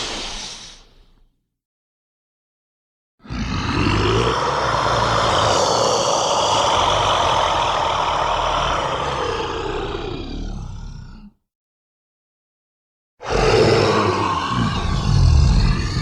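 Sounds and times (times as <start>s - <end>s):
harsh dragon roar: 3.2s - 11.4s, 13.2s - 16.0s.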